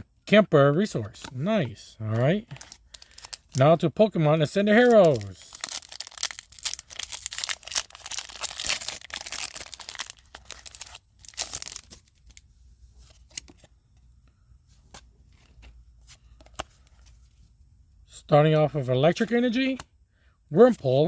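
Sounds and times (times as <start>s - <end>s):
foil wrapper tearing and crinkling: 4.8s - 12.4s.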